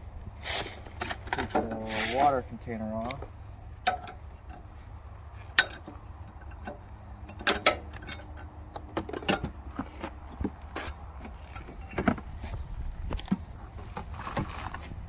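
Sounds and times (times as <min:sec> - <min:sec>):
sharp knocks and clinks of parts: 0:03.0 - 0:04.7, 0:05.5 - 0:12.3
steady low rumble: 0:10.2 - 0:15.0.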